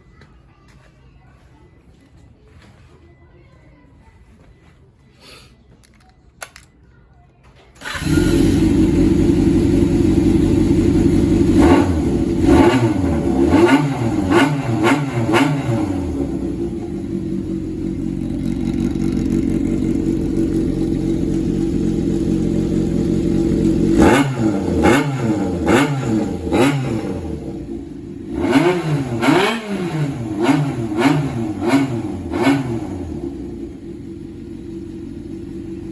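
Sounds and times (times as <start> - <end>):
motorcycle engine revving: 7.8 - 35.9.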